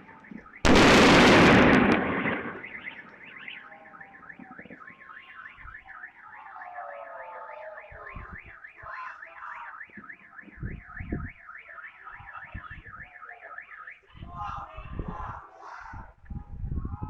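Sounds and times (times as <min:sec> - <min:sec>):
fireworks booming: 0:00.0 - 0:04.9
car alarm siren warbling: 0:00.0 - 0:16.2.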